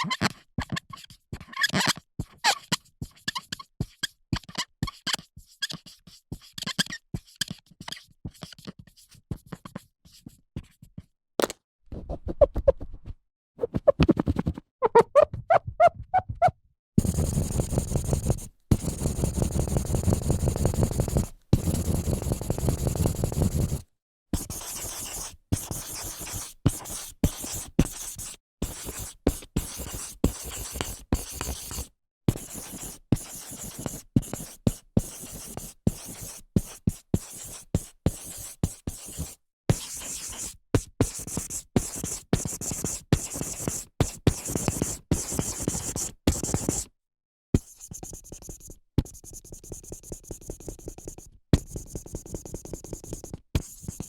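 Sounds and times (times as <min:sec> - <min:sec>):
marker strokes on whiteboard: 0:02.5 - 0:04.1, 0:04.9 - 0:11.1, 0:17.0 - 0:46.9, 0:47.6 - 0:54.0.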